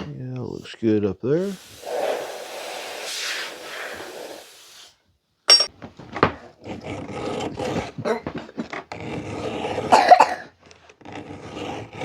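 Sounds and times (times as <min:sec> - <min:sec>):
compressed air hissing: 0:01.4 - 0:05.7.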